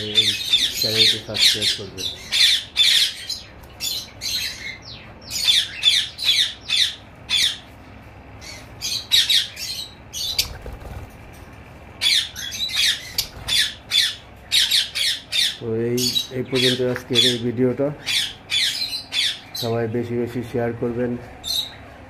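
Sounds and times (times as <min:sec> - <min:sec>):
parrots screeching: 0:00.0 - 0:07.7, 0:08.4 - 0:11.1, 0:12.0 - 0:17.4, 0:18.0 - 0:19.7.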